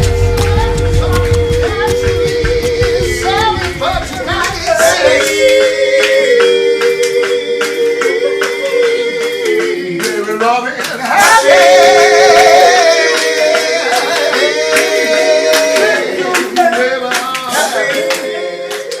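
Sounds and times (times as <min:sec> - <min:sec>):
clapping beat: 0:00.0 - 0:19.0.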